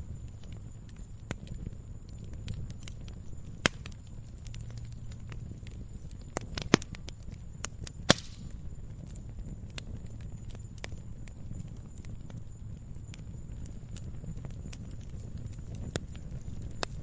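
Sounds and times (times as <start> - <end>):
low rush of flame: 0.0 - 17.0
wood crackling: 0.0 - 17.0
wood popping loudly: 8.1 - 8.5.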